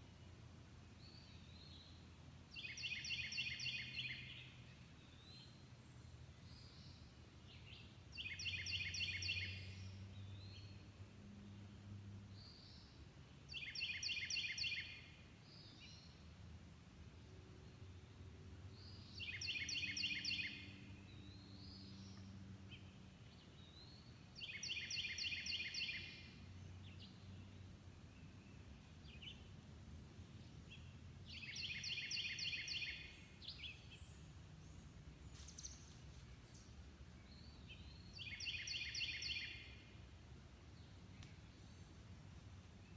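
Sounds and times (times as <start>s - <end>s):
songbird trilling: 24.4s - 26.2s, 31.3s - 34.2s, 38.1s - 39.8s.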